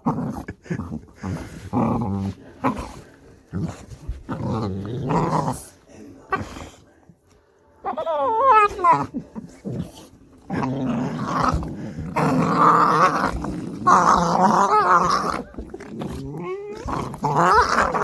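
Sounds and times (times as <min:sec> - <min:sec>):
dogs play-growling: 0:00.0 - 0:06.8, 0:07.9 - 0:18.0
dog whining: 0:07.8 - 0:09.1.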